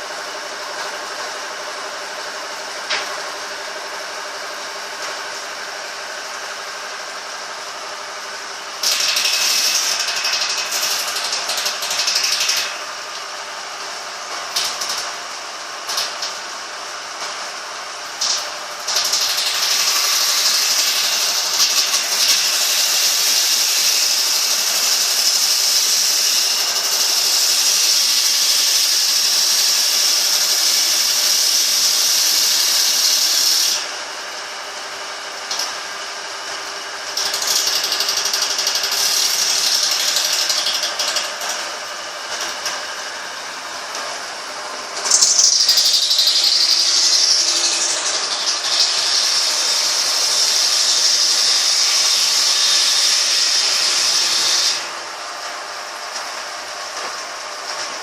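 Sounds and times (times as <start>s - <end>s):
sawmill saw running: 0.0s - 58.0s
saw cutting into wood: 8.6s - 13.3s, 18.0s - 34.7s, 35.4s - 55.1s.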